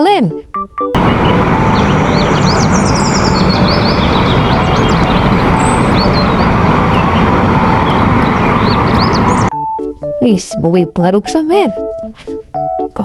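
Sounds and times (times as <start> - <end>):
birds chirping: 1.0 - 9.5
road noise: 1.0 - 9.5
truck engine running: 1.0 - 9.5.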